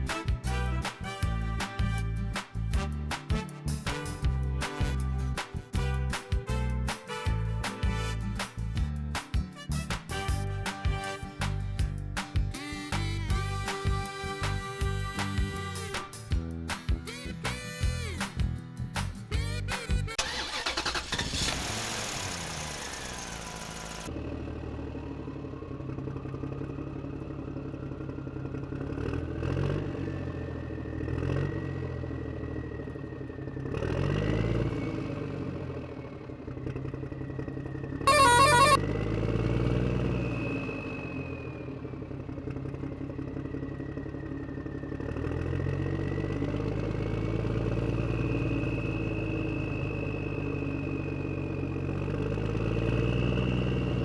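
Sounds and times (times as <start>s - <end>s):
music: 0.0s - 20.7s, 38.1s - 38.8s
vehicle engine running: 0.0s - 54.0s.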